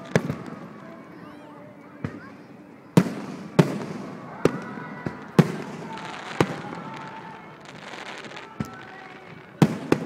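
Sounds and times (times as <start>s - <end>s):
fireworks booming: 3.0s - 10.0s.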